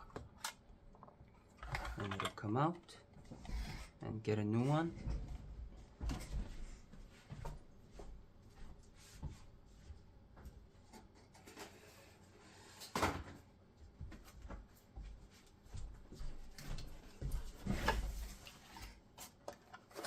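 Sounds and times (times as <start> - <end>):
plastic parts knocking and clicking: 0.0 - 2.5.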